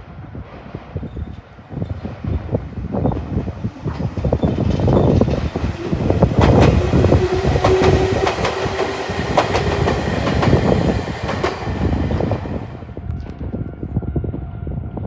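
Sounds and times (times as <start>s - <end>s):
train rumbling past: 0.2s - 14.7s
train wheels clacking on rails: 2.9s - 12.9s.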